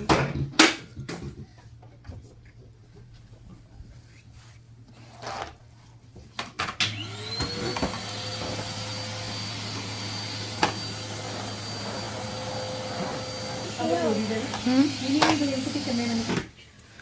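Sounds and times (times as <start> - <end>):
vacuum cleaner motor whine: 6.8 - 16.6.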